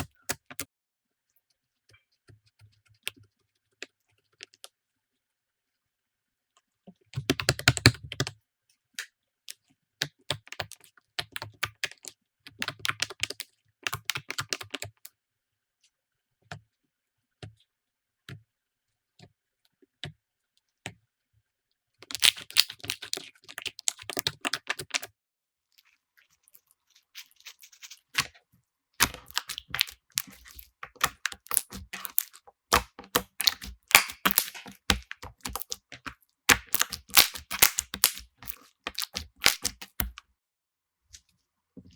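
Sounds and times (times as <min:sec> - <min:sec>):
slime crackling and popping: 0:22.0 - 0:25.1, 0:29.0 - 0:40.2.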